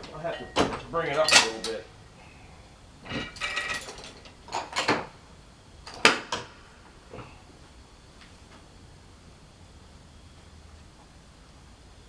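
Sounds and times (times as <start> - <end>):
metal clanks: 0.0 - 5.2.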